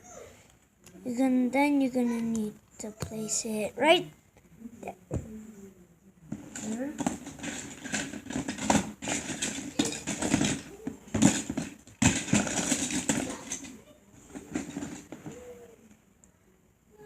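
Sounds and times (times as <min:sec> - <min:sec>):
plastic bricks clicking: 0:06.6 - 0:15.3.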